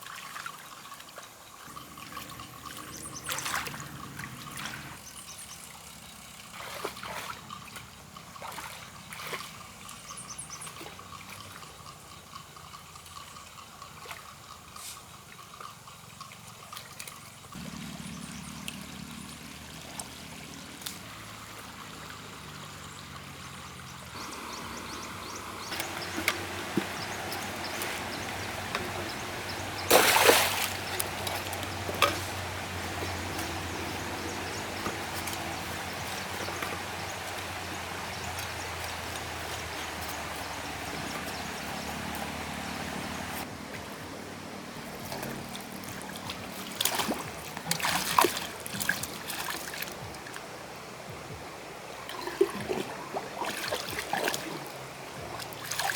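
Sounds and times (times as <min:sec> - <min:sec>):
muddy water trickling and splashing: 0:00.0 - 0:55.9.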